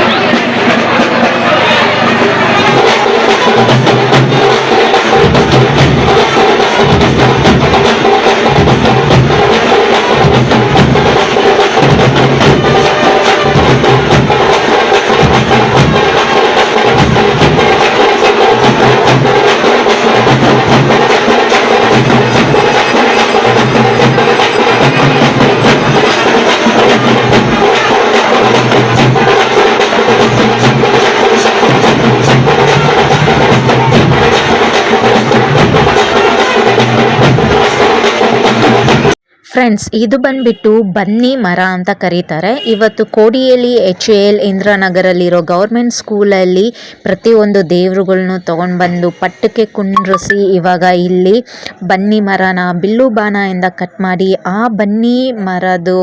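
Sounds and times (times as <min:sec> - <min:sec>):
fast drum beat: 0:00.0 - 0:39.2, 0:50.0 - 0:50.6.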